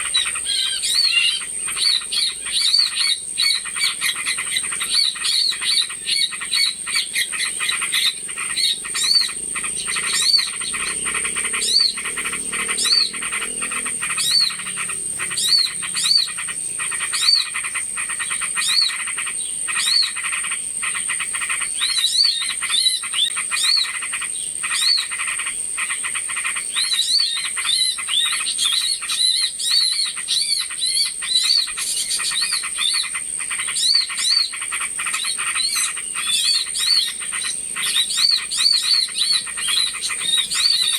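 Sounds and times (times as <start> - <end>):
small birds chirping: 0.0 - 40.9
rising-and-falling bird notes: 4.4 - 18.9.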